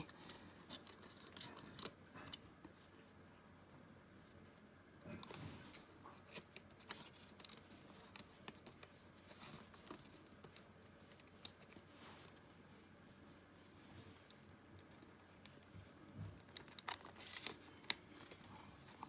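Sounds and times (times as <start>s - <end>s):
small mechanism clicks and scrapes: 16.5s - 18.5s.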